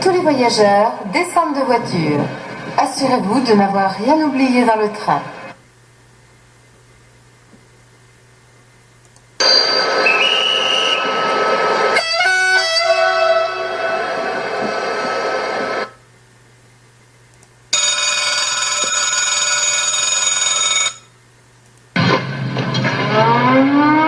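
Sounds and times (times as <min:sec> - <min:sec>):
loud rising whine: 0:09.4 - 0:16.0, 0:22.0 - 0:24.0
rumbling train noise: 0:12.8 - 0:15.9
electric bell ringing: 0:17.8 - 0:21.1.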